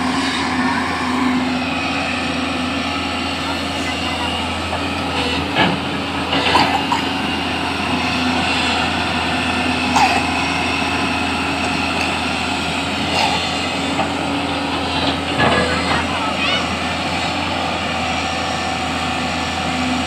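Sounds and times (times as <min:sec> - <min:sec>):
diesel engine running: 0:00.0 - 0:20.0.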